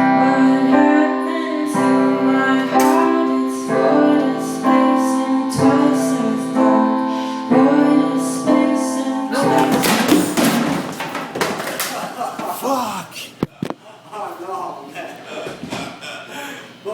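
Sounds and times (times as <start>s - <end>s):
woman singing long notes: 0.0s - 9.9s
piano accompaniment: 0.0s - 11.4s.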